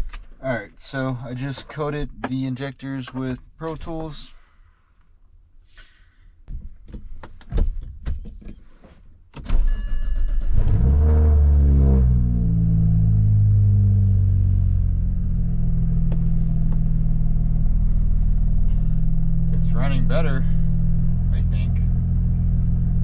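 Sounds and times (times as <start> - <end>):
car engine starting and idling: 9.4 - 23.0.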